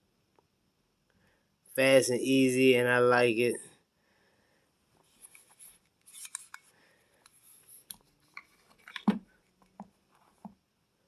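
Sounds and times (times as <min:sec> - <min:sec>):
pistol handling clicks and rubs: 0:05.0 - 0:10.5.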